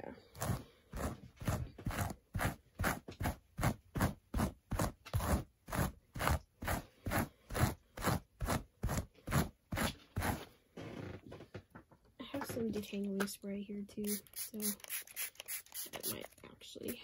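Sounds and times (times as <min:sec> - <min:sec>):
hairbrush scratching through hair: 0:00.3 - 0:10.5, 0:14.1 - 0:16.3.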